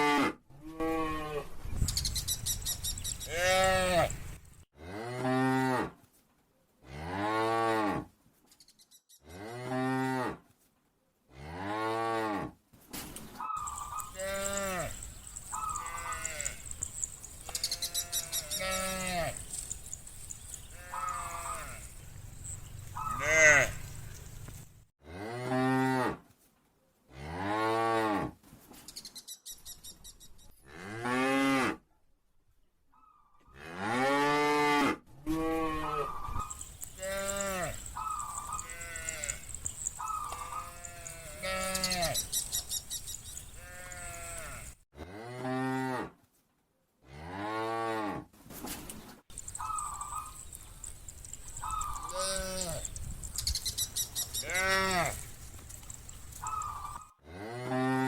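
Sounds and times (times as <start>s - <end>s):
cows mooing: 3.2s - 4.2s, 13.6s - 24.5s, 33.6s - 46.0s, 49.4s - 53.0s, 54.2s - 58.0s.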